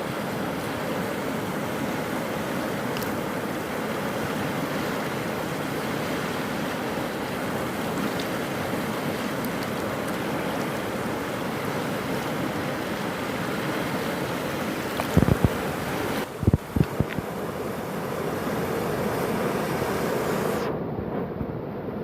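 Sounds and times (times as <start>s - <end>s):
fast-flowing water rushing: 0.0s - 20.7s
faint small clicks: 2.9s - 3.2s.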